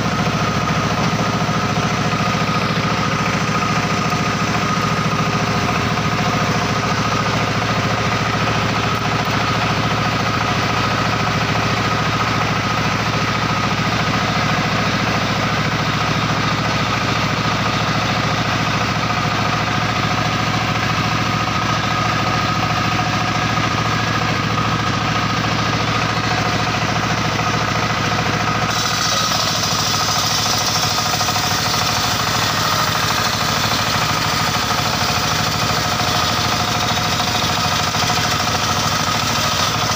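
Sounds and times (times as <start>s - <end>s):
sawmill machine droning: 0.0s - 39.9s.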